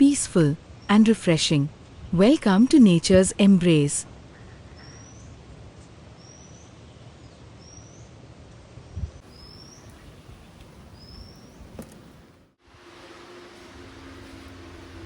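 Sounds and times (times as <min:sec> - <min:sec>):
steady background hiss: 0:09.2 - 0:15.0
bird high upward-sliding call: 0:09.3 - 0:12.4
soft low thump: 0:09.4 - 0:12.4.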